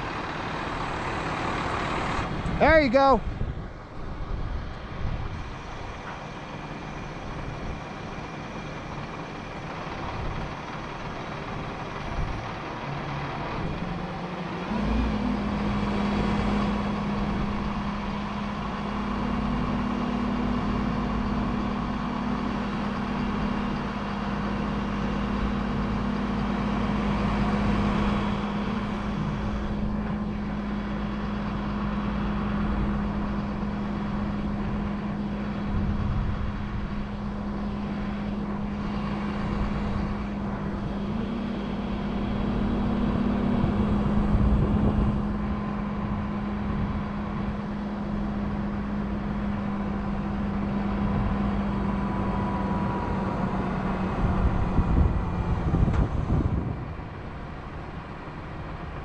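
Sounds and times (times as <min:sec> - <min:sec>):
truck engine running: 0:00.0 - 0:59.0.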